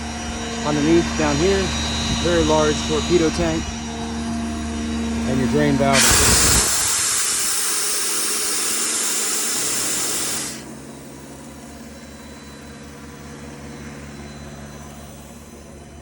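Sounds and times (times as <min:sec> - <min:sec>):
diesel engine throbbing: 0:00.0 - 0:16.0
compressed air hissing: 0:05.9 - 0:11.0.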